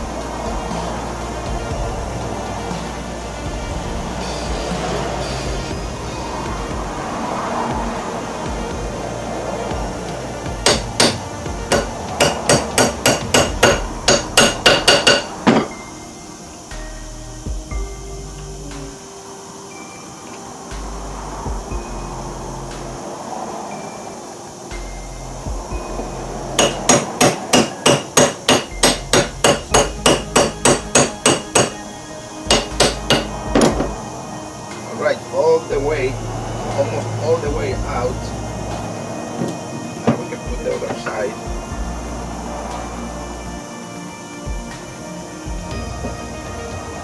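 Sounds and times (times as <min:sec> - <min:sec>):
hammer blows on metal: 0:00.0 - 0:19.2, 0:24.7 - 0:43.1
hammer striking steel: 0:10.0 - 0:16.1, 0:26.6 - 0:34.1.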